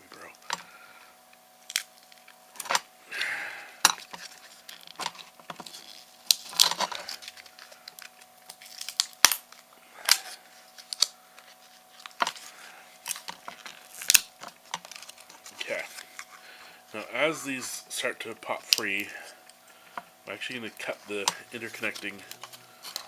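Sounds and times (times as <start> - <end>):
crinkle: 1.6 - 2.8, 3.8 - 16.8.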